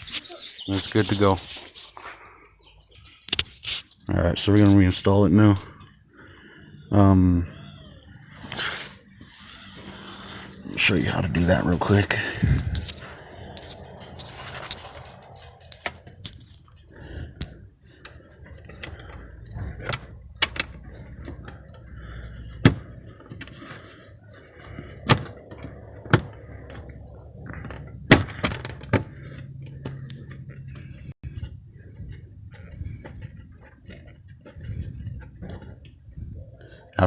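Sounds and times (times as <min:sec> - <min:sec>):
plastic parts clicking and knocking: 0:25.0 - 0:36.0.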